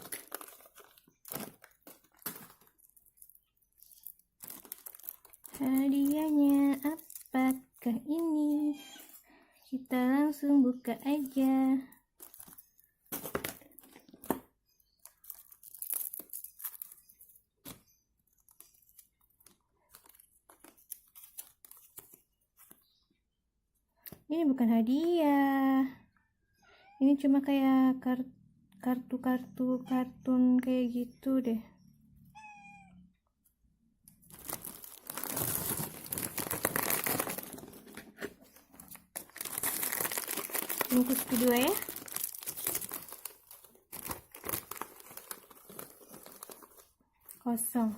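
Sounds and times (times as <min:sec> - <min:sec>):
plastic packaging tearing and crinkling: 0:00.0 - 0:07.6, 0:15.0 - 0:17.2, 0:34.3 - 0:46.9.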